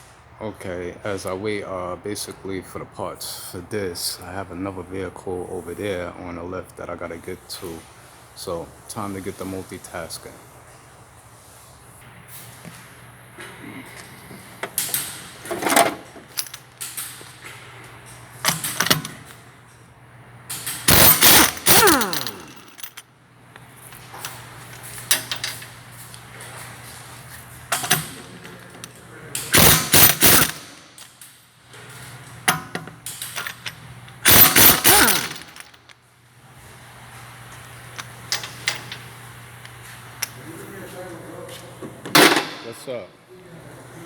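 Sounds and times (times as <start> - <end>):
power tool rattling and clicking: 14.6 - 17.2, 18.5 - 19.3, 20.5 - 23.0, 27.7 - 31.3, 32.5 - 36.0.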